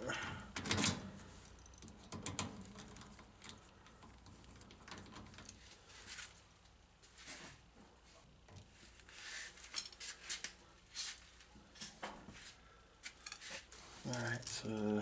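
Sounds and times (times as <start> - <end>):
small parts clicking and tapping: 0.5 - 5.6.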